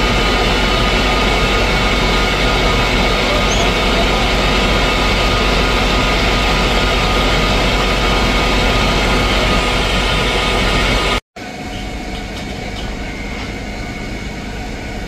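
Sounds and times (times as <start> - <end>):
heavy engine running: 0.0 - 15.0.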